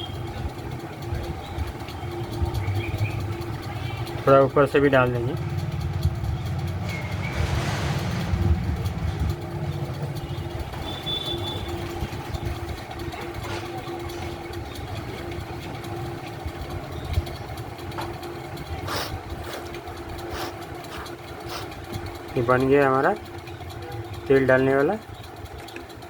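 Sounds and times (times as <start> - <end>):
engine running: 0.0 - 26.0.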